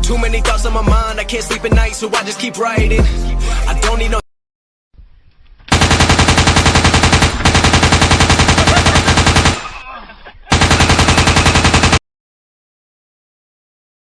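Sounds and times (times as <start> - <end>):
automatic gunfire: 5.7 - 9.8, 10.5 - 12.0.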